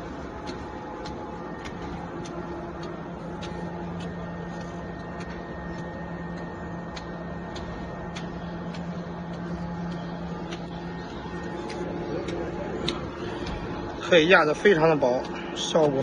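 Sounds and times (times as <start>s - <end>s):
machine clicking: 0.0s - 16.0s
machine motor hum: 0.0s - 16.0s.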